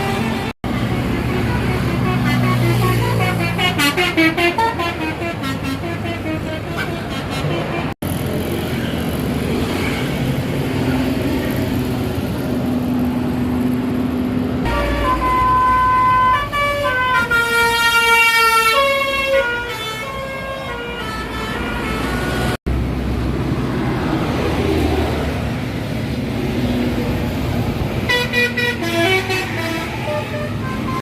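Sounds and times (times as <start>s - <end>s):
musical air horn melody: 0.0s - 7.9s, 14.6s - 22.6s, 28.1s - 31.0s
bus engine rumbling: 0.0s - 31.0s.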